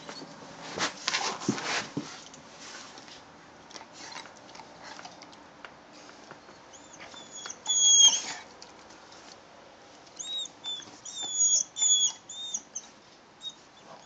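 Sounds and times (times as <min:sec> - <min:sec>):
squeaky dog toy squeaking: 0:06.8 - 0:08.3, 0:10.2 - 0:12.8.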